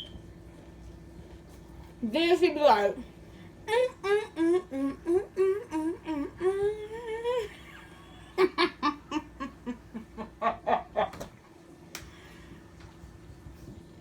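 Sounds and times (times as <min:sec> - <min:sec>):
woman humming a tune: 0:03.7 - 0:07.6.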